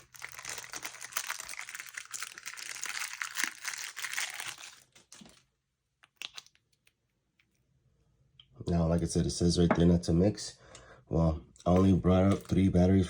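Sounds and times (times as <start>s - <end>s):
plastic packaging crinkling: 0.0s - 5.5s, 11.7s - 12.7s.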